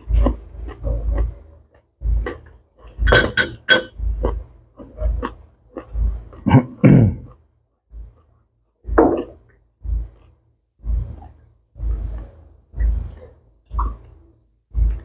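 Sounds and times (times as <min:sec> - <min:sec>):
person humming: 0:06.5 - 0:07.3.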